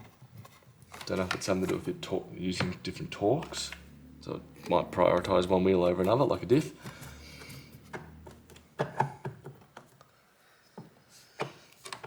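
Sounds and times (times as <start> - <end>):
parts tapping on a bench: 6.8 - 10.0.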